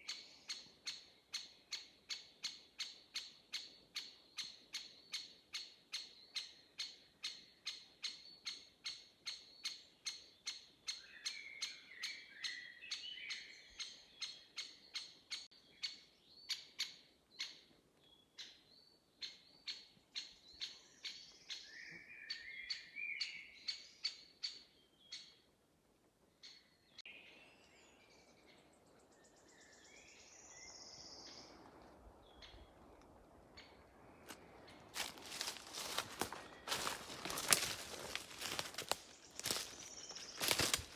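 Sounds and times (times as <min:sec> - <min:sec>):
bird warbling song: 0:26.4 - 0:40.9
soft rustle: 0:34.1 - 0:40.9.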